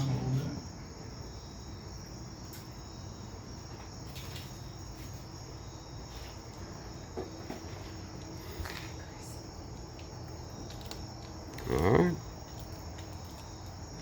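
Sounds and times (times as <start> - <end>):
crickets chirring: 0.0 - 14.0.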